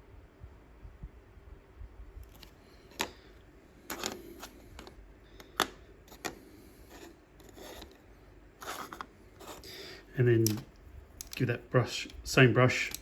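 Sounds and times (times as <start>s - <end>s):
small plastic clicks and taps: 10.4s - 11.4s.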